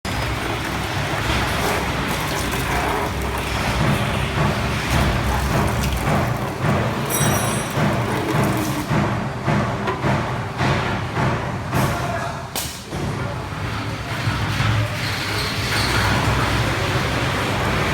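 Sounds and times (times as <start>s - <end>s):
industrial machinery rumble: 0.0s - 17.9s.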